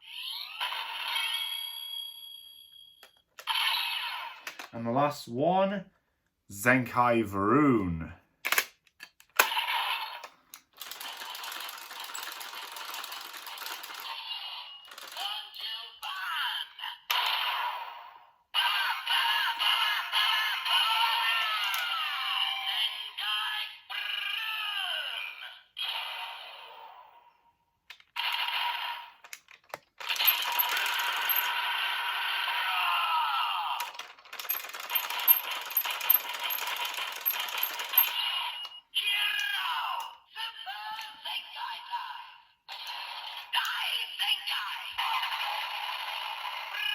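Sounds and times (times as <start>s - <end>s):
toy electronic sound effect: 0.0s - 2.2s, 2.9s - 4.7s, 13.8s - 15.6s, 16.7s - 27.0s, 28.0s - 29.4s, 30.0s - 33.0s, 33.8s - 39.8s.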